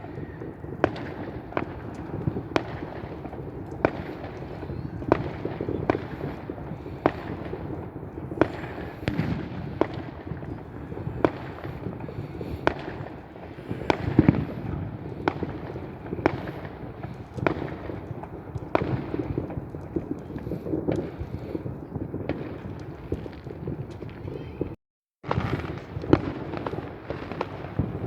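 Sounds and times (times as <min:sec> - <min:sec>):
fireworks bangs and cracks: 0:00.0 - 0:28.0.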